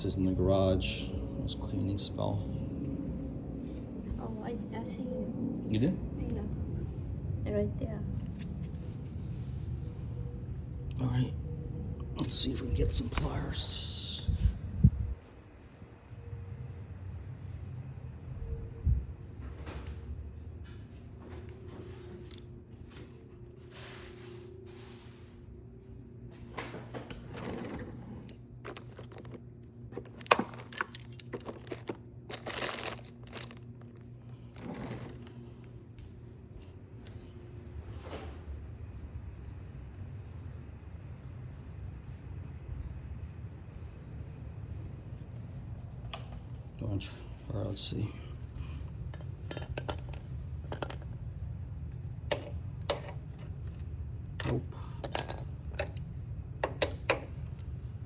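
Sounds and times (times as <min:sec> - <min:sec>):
low rumble: 0:00.0 - 0:19.5
steady low hum: 0:00.0 - 0:58.0.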